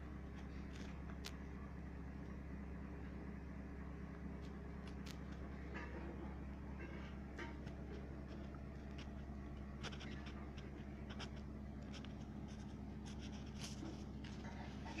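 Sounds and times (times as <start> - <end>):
steady low hum: 0.0 - 15.0
light clicks and scratchy taps: 6.8 - 14.6.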